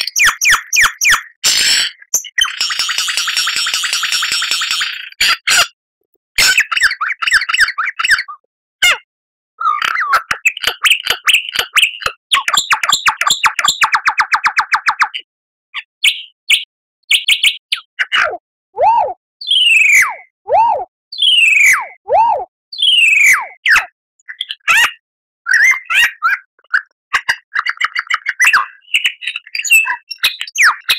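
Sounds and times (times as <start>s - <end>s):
lyrebird singing trills and whistles: 0.0s - 5.0s, 9.6s - 15.2s, 15.8s - 18.0s, 18.8s - 22.0s, 22.8s - 30.9s.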